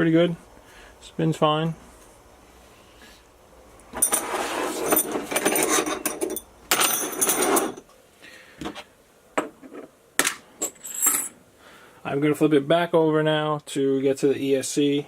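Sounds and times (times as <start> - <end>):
metal parts clattering: 4.0 - 7.8.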